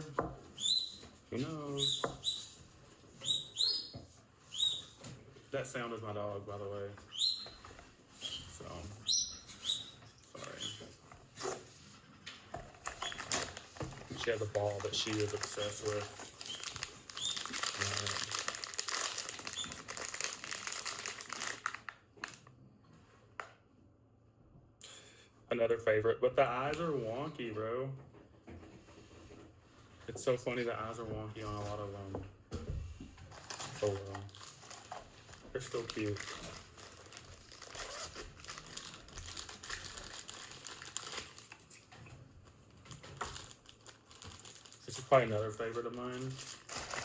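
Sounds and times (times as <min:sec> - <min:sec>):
plastic packaging crinkling: 0:12.6 - 0:22.5, 0:33.3 - 0:47.0.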